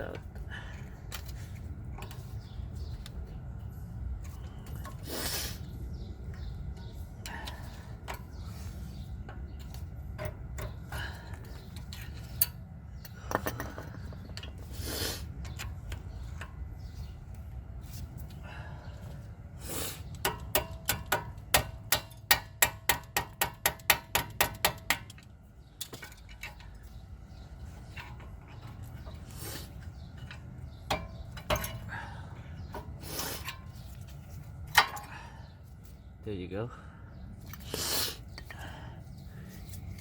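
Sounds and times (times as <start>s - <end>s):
metal clinks and scrapes: 24.3s - 32.0s.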